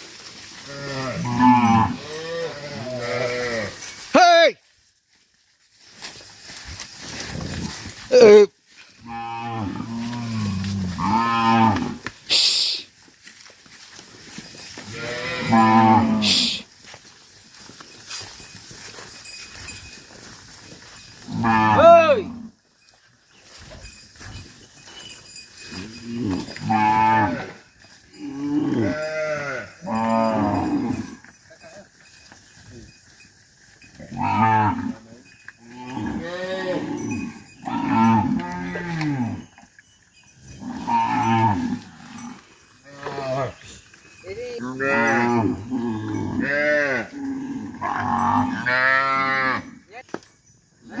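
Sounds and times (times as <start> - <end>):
cattle mooing: 0.6 - 3.8, 14.9 - 16.6, 21.3 - 22.4, 26.1 - 27.6, 28.2 - 31.1, 34.1 - 35.0, 35.7 - 39.5, 44.6 - 49.8.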